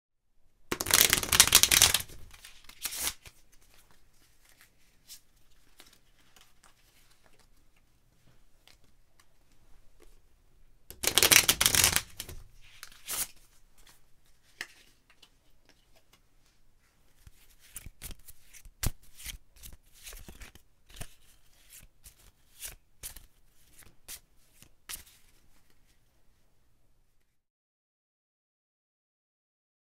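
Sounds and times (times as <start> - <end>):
sharp card clicks: 0.7 - 2.2, 10.9 - 12.4
playing cards riffle shuffled: 0.7 - 7.6, 10.9 - 15.3, 17.1 - 25.9
card handling noise: 0.7 - 7.8, 10.9 - 16.2.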